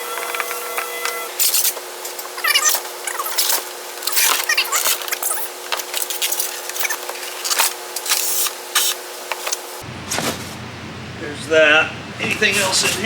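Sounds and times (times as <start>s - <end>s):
packing rustling and scraping: 1.4s - 10.6s, 12.2s - 13.0s.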